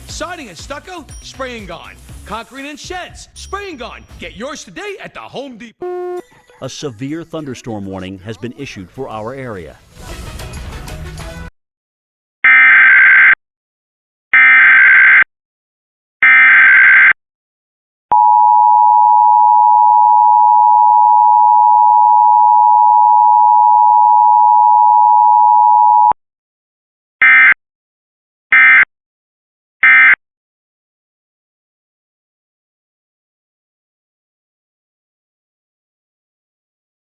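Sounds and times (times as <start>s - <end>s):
two-tone attention signal: 5.8s - 6.3s.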